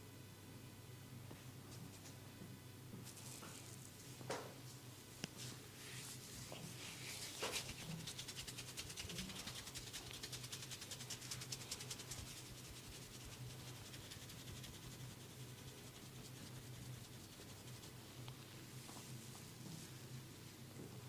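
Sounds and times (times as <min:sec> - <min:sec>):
low steady hum: 0:00.0 - 0:21.0
hands scratching over skin: 0:06.8 - 0:18.1.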